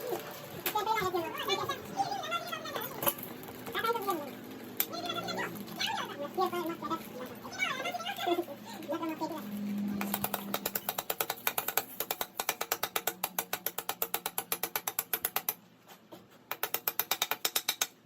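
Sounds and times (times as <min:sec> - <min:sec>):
ratchet wrench clicking: 0:16.5 - 0:18.0.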